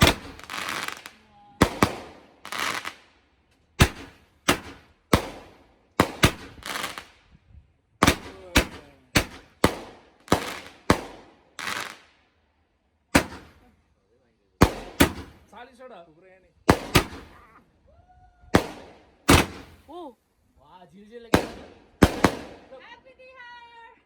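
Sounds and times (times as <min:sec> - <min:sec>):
fireworks bangs: 0:00.0 - 0:03.1, 0:03.8 - 0:07.2, 0:08.0 - 0:12.1, 0:13.1 - 0:13.7, 0:14.6 - 0:15.6, 0:16.7 - 0:17.5, 0:18.5 - 0:19.9, 0:21.2 - 0:23.0
crackling hiss: 0:00.0 - 0:07.4, 0:08.0 - 0:12.3.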